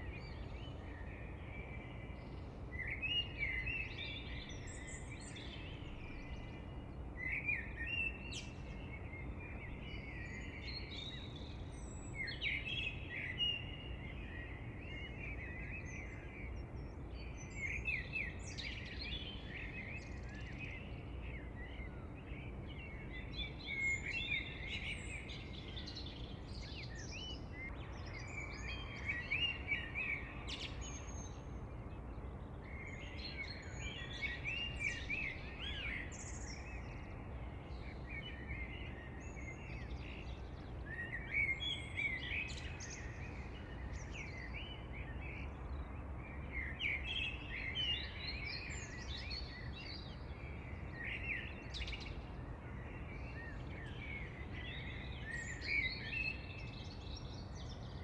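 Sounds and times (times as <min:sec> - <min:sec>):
low background hiss: 0:00.0 - 0:58.0
birds chirping and singing: 0:32.6 - 0:58.0.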